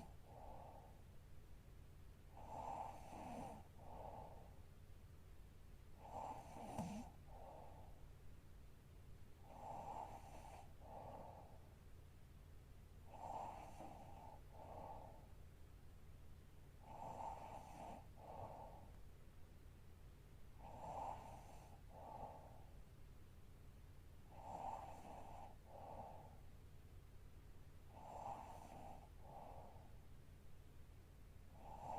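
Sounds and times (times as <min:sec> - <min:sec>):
woman snoring softly: 0:00.0 - 0:01.0, 0:02.3 - 0:04.6, 0:05.9 - 0:08.0, 0:09.4 - 0:11.7, 0:13.0 - 0:15.4, 0:16.8 - 0:19.0, 0:20.5 - 0:22.8, 0:24.2 - 0:26.5, 0:27.8 - 0:30.0, 0:31.4 - 0:31.9
faint low hum: 0:00.0 - 0:31.9.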